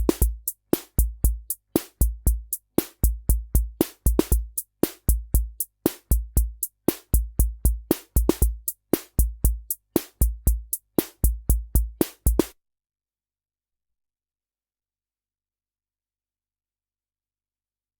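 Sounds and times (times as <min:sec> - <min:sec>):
drum machine rock rhythm: 0:00.0 - 0:12.5.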